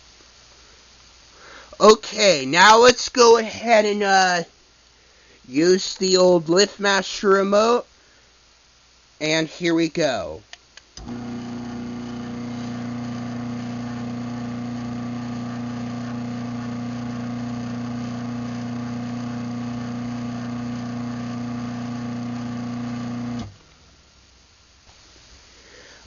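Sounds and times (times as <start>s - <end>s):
garage door opener motor humming: 11.0s - 23.7s.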